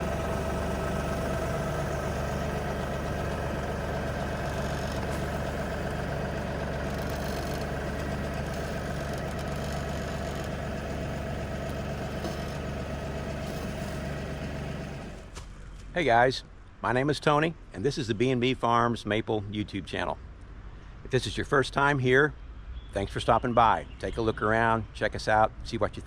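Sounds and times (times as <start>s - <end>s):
mid-pitched whine: 0.0s - 15.4s
engine idling: 0.0s - 15.5s.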